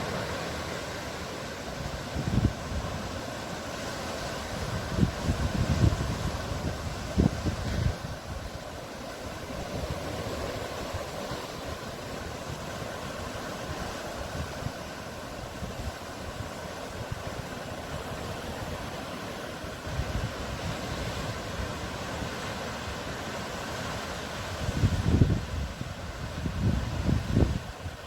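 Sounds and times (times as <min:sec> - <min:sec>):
sea surf: 0:00.0 - 0:28.0
wind: 0:00.0 - 0:28.0
wind gust on microphone: 0:01.8 - 0:28.0.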